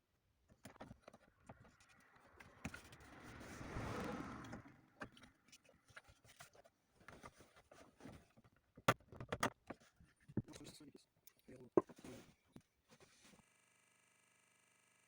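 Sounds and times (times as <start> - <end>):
soft rushing noise: 2.9 - 4.9.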